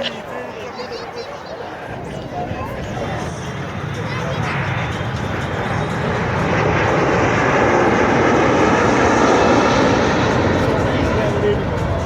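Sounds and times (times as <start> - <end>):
airliner engines roaring in flyby: 0.0 - 12.0.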